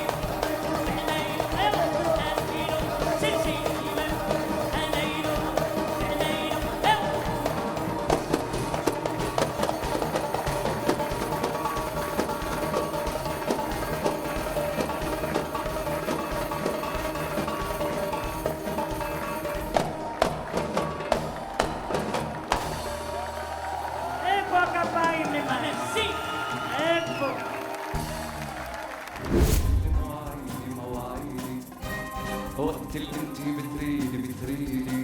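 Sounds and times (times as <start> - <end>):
percussion strikes: 0.0 - 24.0, 29.2 - 35.0
band playing ornamented melody: 0.0 - 25.9, 26.8 - 35.0.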